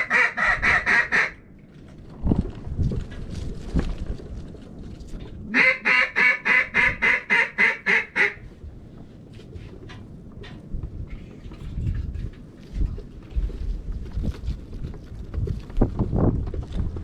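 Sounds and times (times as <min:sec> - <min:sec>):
duck call quacks: 0:00.0 - 0:01.4, 0:05.5 - 0:08.4
low wind rumble: 0:00.0 - 0:17.0.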